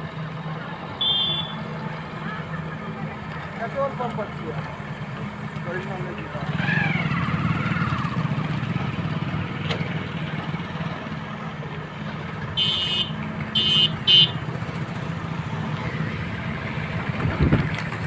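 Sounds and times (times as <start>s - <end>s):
engine running: 0.0s - 18.0s
vehicle horn honks: 1.0s - 1.7s, 12.6s - 14.4s.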